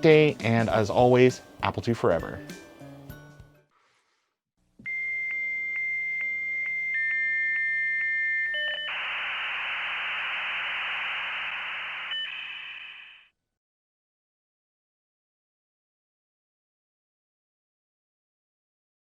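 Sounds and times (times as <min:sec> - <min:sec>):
modem hiss: 0:08.9 - 0:13.3.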